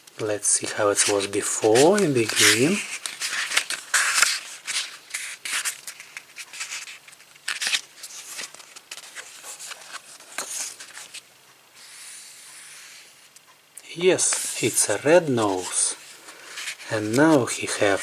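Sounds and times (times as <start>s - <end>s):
book pages flipping: 0.2s - 18.0s.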